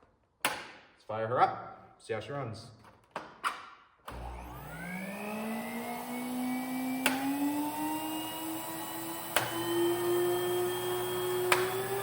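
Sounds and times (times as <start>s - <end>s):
vacuum cleaner motor whine: 4.1s - 12.0s.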